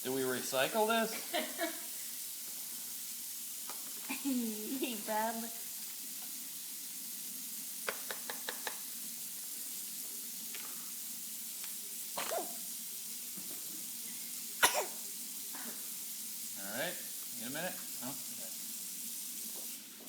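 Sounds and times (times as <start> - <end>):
food sizzling in a frying pan: 0.0 - 20.0
sneeze or cough: 12.2 - 12.6, 14.6 - 15.0.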